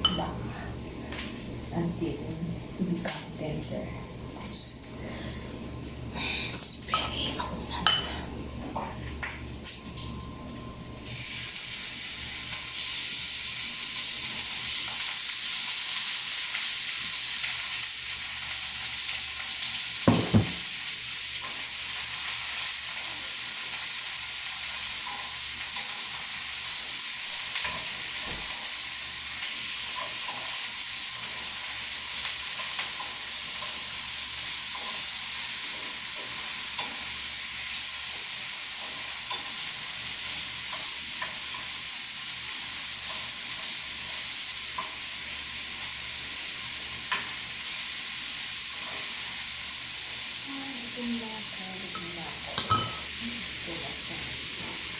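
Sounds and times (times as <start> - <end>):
meat sizzling in a frying pan: 7.6 - 54.9.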